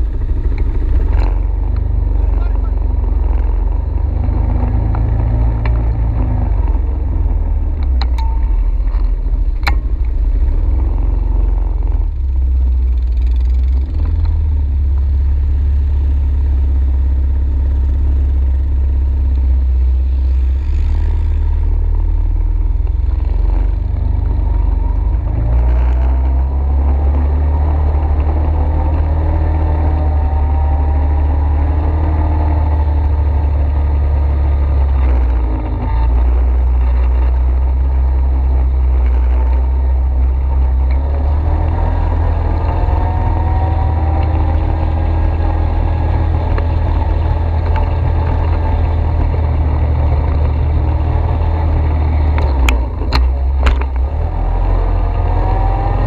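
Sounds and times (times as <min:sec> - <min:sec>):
atv engine rumbling: 0:00.0 - 0:56.0.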